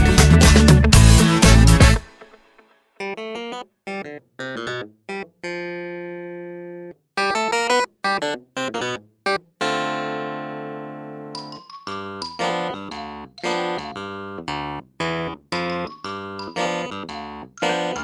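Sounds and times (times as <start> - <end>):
keyboard instrument music: 0.0 - 2.3, 9.6 - 18.0.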